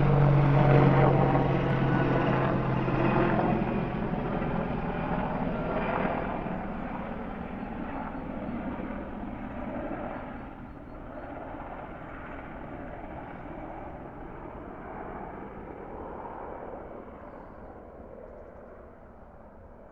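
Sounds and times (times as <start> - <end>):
helicopter rotor and turbine noise: 0.0 - 19.9.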